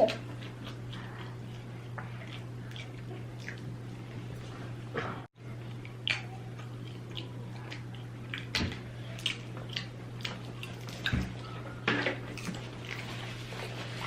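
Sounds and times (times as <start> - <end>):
chewing with wet lip smacks: 0.0 - 4.4, 5.6 - 11.2
steady low hum: 0.0 - 14.0.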